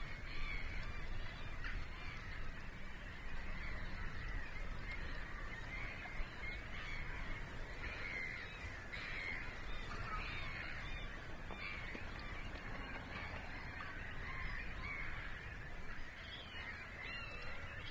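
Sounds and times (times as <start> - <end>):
wetland birds calling: 0.0 - 17.9.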